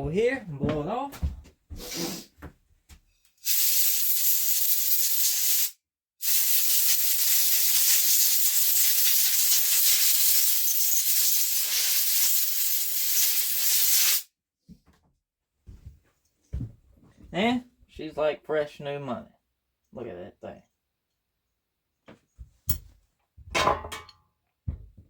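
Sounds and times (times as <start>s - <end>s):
compressed air blow gun hissing: 1.8s - 2.3s, 3.4s - 14.2s.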